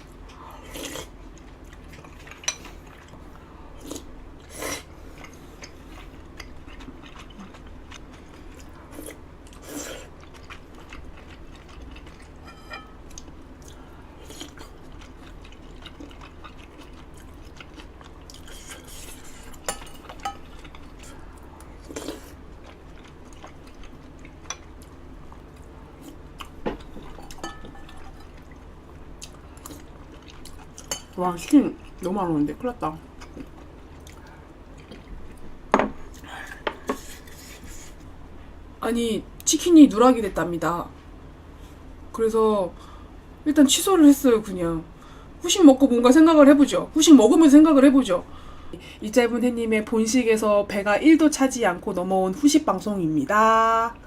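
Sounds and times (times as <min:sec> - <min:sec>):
soft chewing: 0:00.0 - 0:32.1, 0:32.9 - 0:38.2
steady low hum: 0:00.0 - 0:54.0.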